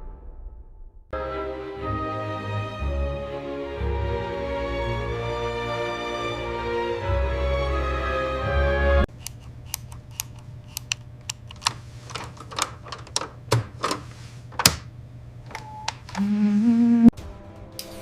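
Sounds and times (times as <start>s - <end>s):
pitched tone: 16.2s - 17.1s.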